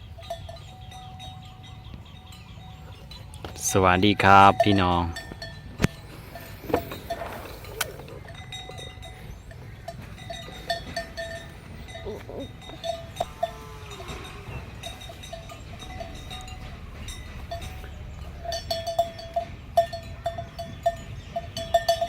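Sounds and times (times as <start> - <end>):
cow bells clinking: 0.0 - 22.0
low rumble: 13.2 - 20.2.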